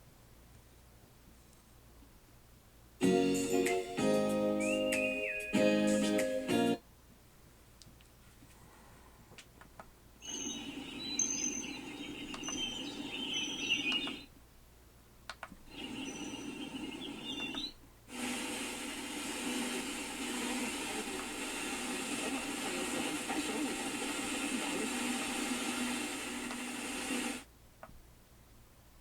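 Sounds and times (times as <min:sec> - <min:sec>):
chirps from speaker: 0:10.2 - 0:14.3, 0:15.7 - 0:17.8.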